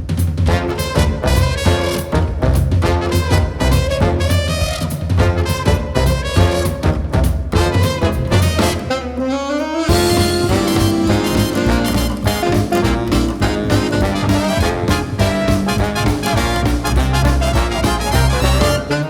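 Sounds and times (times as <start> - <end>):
swing jazz band: 0.0 - 19.0
horn line sliding upward: 7.6 - 19.0.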